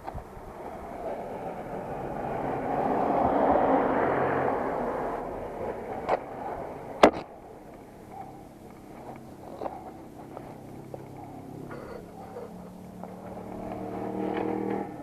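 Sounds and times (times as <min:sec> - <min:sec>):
vehicle passing by: 0:00.3 - 0:15.0.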